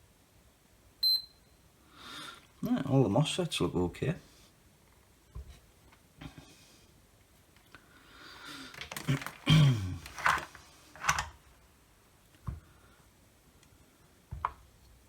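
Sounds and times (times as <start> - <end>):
tools handled on workbench: 8.7 - 11.4.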